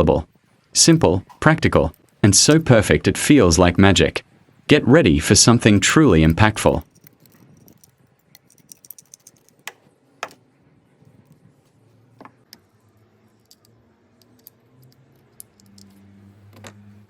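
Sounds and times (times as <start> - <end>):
small hard objects clicking: 6.2 - 9.8.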